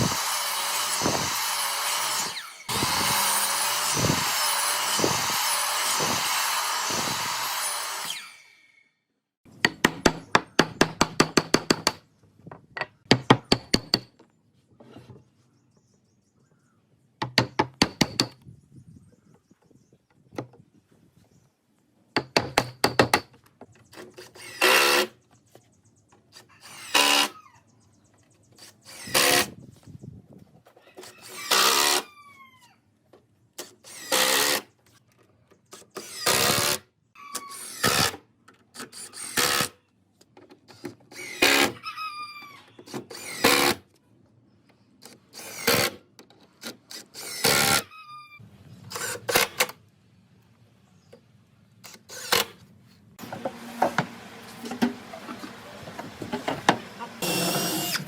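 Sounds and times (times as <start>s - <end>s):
power drill whirring: 0.0s - 8.9s, 24.4s - 25.1s, 26.6s - 27.4s, 28.6s - 29.5s, 31.0s - 32.1s, 33.8s - 34.6s, 35.9s - 36.8s, 41.1s - 41.8s, 43.1s - 43.8s, 46.6s - 47.9s, 51.9s - 52.6s, 56.7s - 58.0s.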